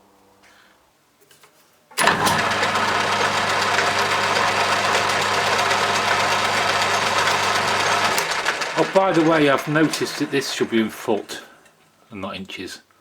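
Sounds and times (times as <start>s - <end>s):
metal lathe running: 2.0s - 11.3s.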